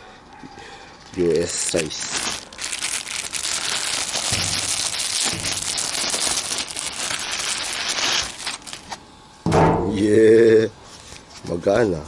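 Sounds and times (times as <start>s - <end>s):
plastic packaging crinkling: 1.2s - 9.0s.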